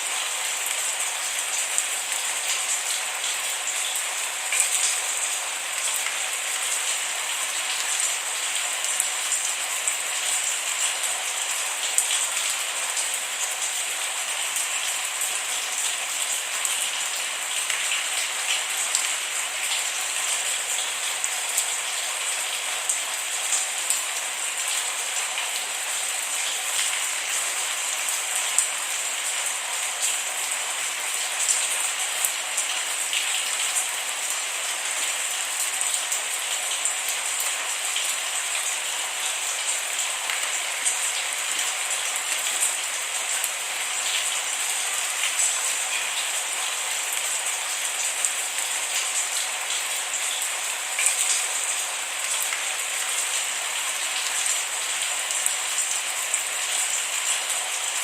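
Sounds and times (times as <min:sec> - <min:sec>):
rain pattering on hard surface: 0:00.0 - 0:58.0.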